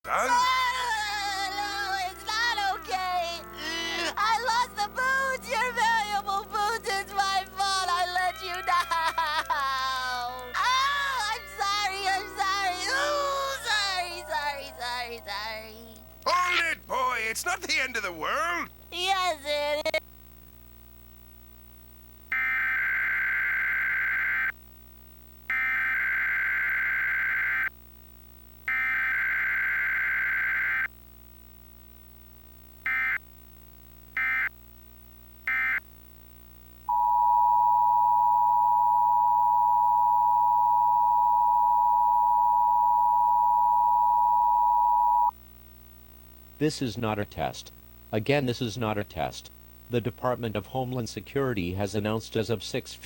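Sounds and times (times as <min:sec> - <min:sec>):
two-tone attention signal: 0:36.9 - 0:45.3.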